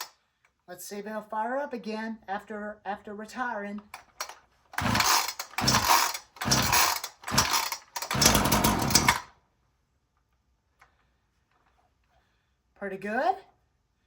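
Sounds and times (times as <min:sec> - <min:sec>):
chainsaw engine cranking: 0:03.9 - 0:09.4
recoil starter pulls: 0:03.9 - 0:09.4.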